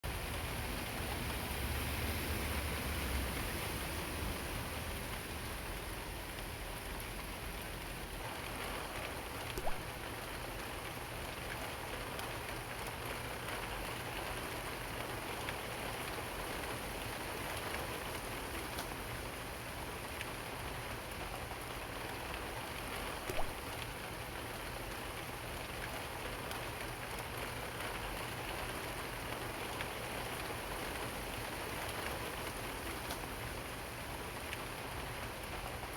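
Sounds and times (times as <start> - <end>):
loud close raindrops: 0.0 - 35.9
rain on leaves: 0.1 - 35.9.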